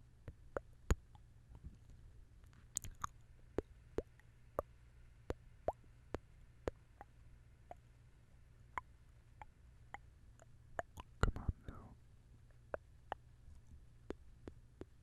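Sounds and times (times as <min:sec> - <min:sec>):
wet lip pops: 0:02.8 - 0:04.2
tongue clicks: 0:02.8 - 0:04.7, 0:08.7 - 0:11.8, 0:14.0 - 0:15.0.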